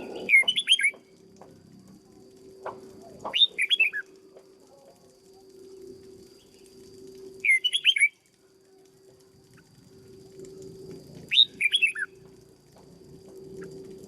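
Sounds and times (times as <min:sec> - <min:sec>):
bird singing whistled notes: 0:00.0 - 0:01.0, 0:03.3 - 0:04.1, 0:07.4 - 0:08.2, 0:11.3 - 0:12.2.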